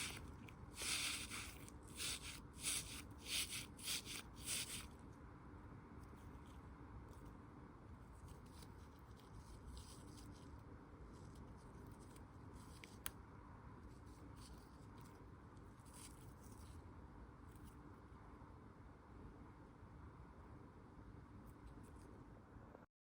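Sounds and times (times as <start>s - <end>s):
faint rustling handling noise: 6.0s - 18.0s.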